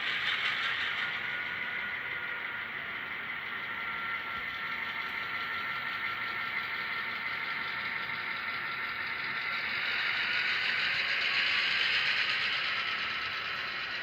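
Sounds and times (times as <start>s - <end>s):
diesel engine sound from small speaker: 0.0s - 14.0s.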